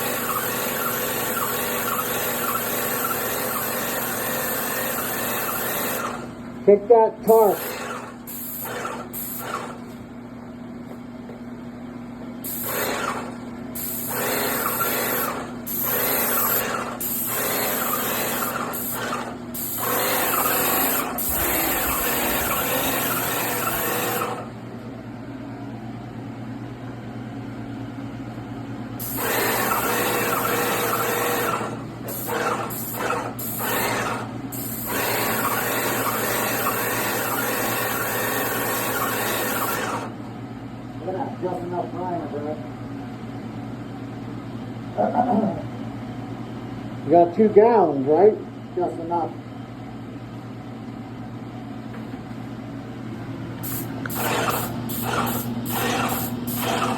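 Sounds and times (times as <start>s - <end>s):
spray gun hissing: 0.0s - 6.0s, 7.5s - 9.4s, 13.8s - 24.4s, 29.0s - 40.0s, 53.6s - 56.9s
paint sprayer pump humming: 0.0s - 6.4s, 7.3s - 10.0s, 12.4s - 24.6s, 29.0s - 40.2s, 53.6s - 56.9s.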